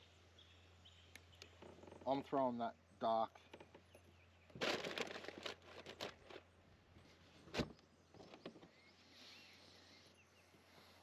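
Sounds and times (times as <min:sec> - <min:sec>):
gear rustling and crinkling: 0:04.5 - 0:06.5.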